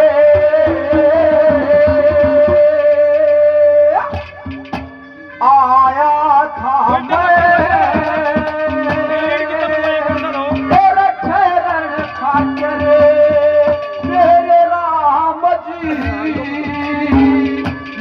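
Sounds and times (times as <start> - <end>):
hand drum strokes: 0.0 - 18.0
sliding ornamented melody: 6.9 - 15.0.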